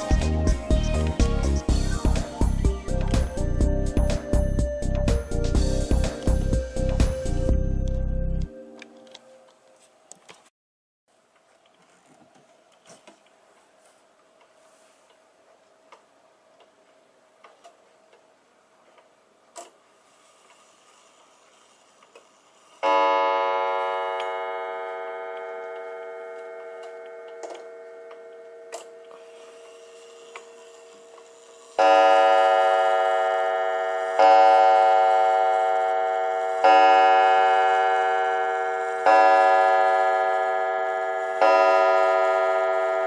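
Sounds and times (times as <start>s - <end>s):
clock gong strikes: 22.8s - 29.2s, 31.8s - 43.0s.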